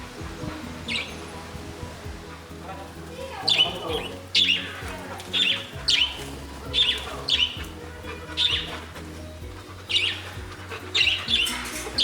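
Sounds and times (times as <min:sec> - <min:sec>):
budgerigars chirping: 0:00.0 - 0:01.5, 0:02.2 - 0:12.0
background music: 0:00.0 - 0:12.0.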